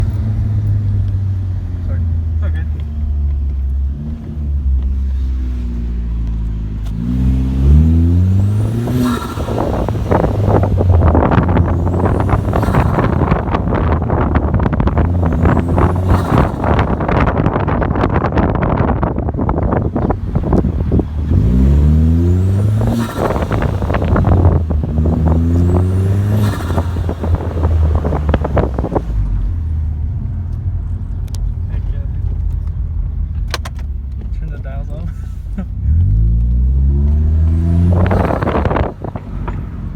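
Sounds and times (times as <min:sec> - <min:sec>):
car engine revving: 0:00.0 - 0:39.9
turbo flutter rush of air: 0:08.4 - 0:17.4.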